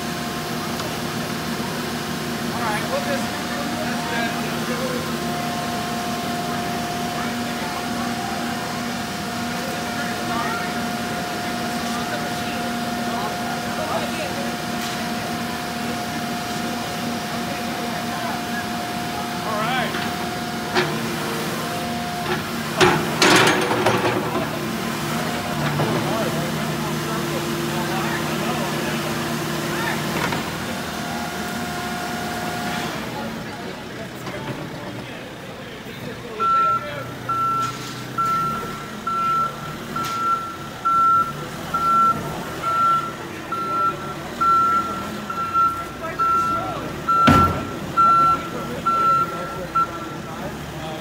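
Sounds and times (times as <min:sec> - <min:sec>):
backhoe engine running: 0:00.0 - 0:51.0
metal clanking: 0:22.3 - 0:24.6
backup alarm beeping: 0:36.4 - 0:50.3.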